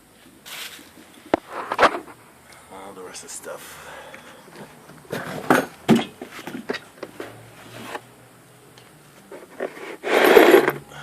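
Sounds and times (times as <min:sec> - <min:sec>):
rustling scrape: 0:00.4 - 0:02.2, 0:07.2 - 0:08.1, 0:09.2 - 0:10.8.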